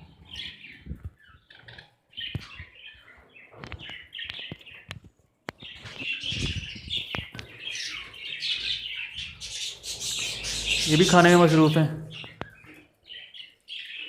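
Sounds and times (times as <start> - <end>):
budgerigars chirping: 5.6 - 14.0.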